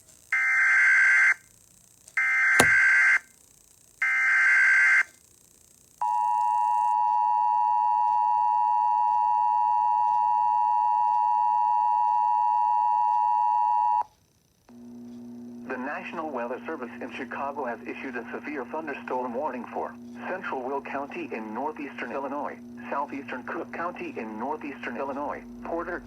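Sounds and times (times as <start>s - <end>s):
click: 2.6s - 2.9s.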